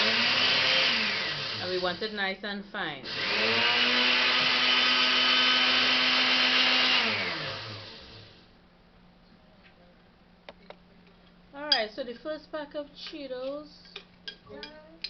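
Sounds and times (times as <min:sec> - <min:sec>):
blender grinding snacks: 0:00.0 - 0:02.0, 0:03.0 - 0:08.5.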